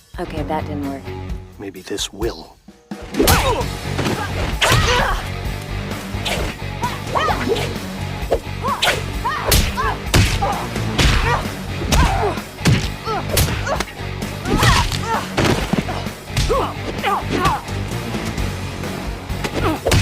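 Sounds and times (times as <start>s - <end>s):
punch and kick impacts: 3.2s - 5.2s, 8.3s - 17.6s, 19.4s - 20.0s.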